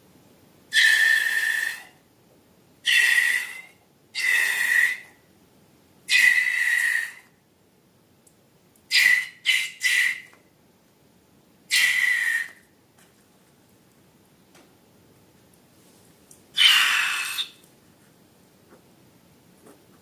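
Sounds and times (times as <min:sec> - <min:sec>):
air whistling from balloon neck: 0:06.1 - 0:07.2, 0:08.9 - 0:10.3, 0:11.7 - 0:12.6.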